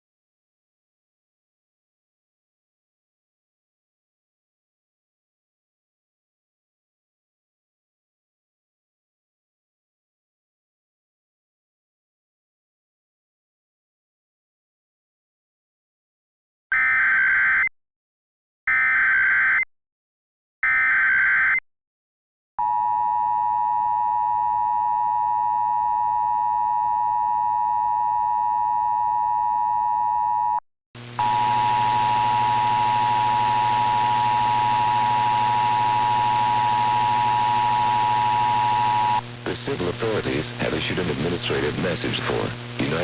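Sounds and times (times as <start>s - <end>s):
two-tone attention signal: 22.6s - 30.6s.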